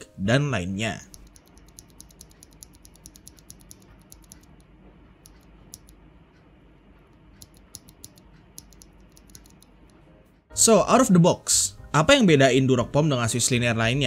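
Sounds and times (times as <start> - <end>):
typing on mechanical keyboard: 1.1 - 4.6, 5.2 - 5.9, 7.4 - 9.8.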